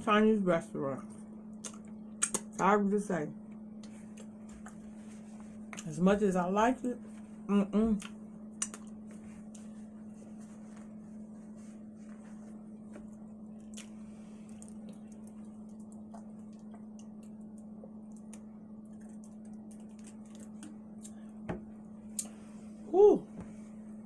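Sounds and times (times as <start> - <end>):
steady low hum: 0.0 - 24.0
faint chewing: 13.6 - 21.3.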